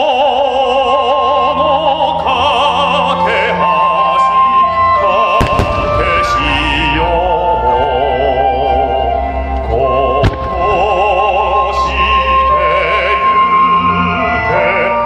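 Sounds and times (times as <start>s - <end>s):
music over loudspeakers: 0.9s - 15.0s
firework burst: 5.4s - 7.0s, 10.2s - 10.9s.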